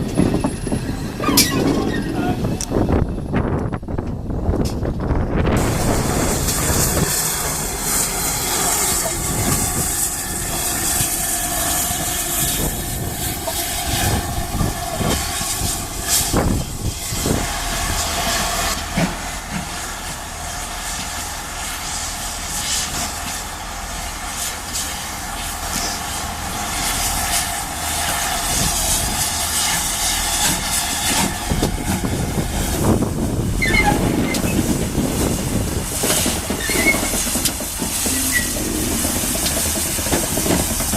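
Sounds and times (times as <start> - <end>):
steam hissing: 5.4 - 40.9
wheels clicking on rails: 20.8 - 40.9.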